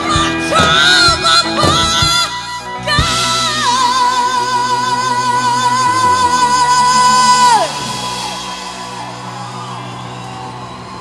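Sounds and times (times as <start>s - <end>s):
woman singing a long note: 0.0s - 8.2s
live band sustained chord: 0.0s - 11.0s.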